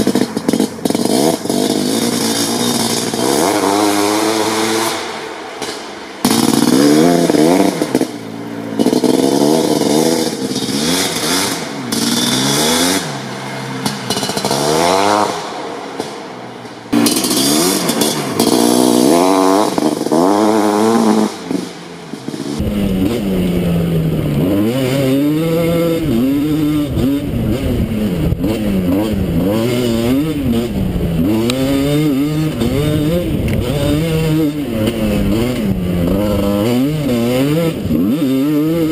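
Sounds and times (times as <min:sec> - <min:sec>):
quad engine revving: 0:00.0 - 0:38.9.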